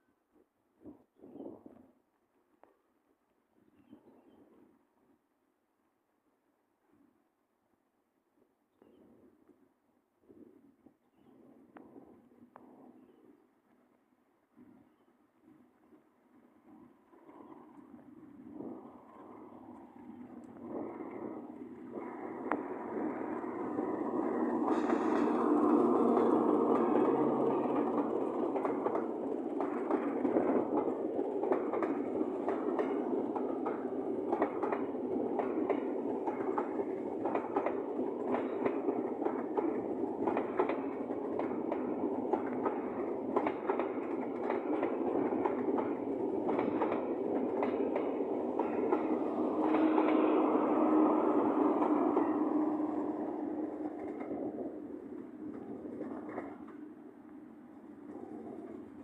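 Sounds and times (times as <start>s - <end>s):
train wheels clattering over rails: 20.6s - 56.9s.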